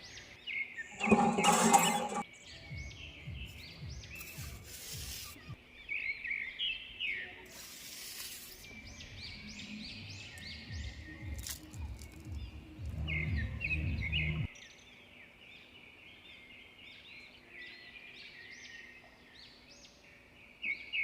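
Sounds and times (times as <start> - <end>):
birds chirping: 0.0 - 21.0
brief hissing noises: 4.2 - 5.6, 7.5 - 8.7.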